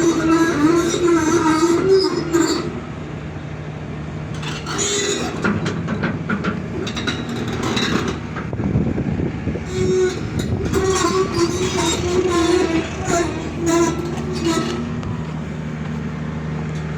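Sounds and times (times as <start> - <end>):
excavator engine hum: 0.0 - 16.9
metallic clanks and rattles: 4.4 - 8.6.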